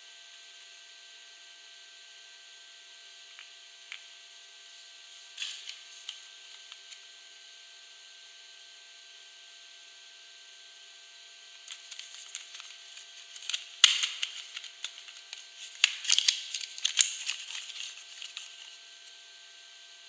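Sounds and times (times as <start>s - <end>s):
packaging crackling open: 5.4s - 7.0s, 11.6s - 18.8s.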